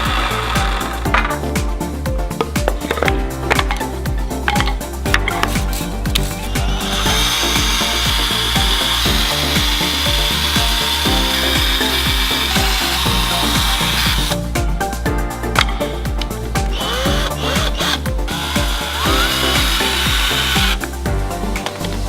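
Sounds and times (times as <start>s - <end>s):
power tool whining: 0.0s - 1.4s, 5.4s - 14.6s, 16.3s - 22.0s
background music with beat: 0.0s - 22.0s.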